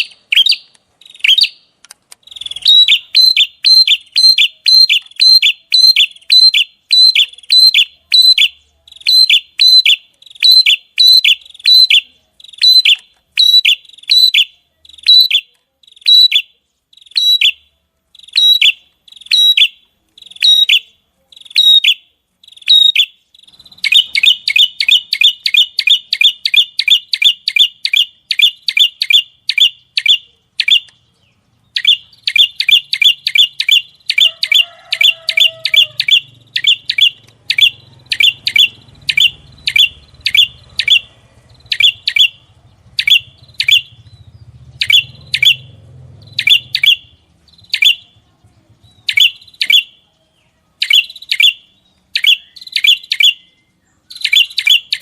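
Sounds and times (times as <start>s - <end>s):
songbird high chirps: 0.0s - 55.0s.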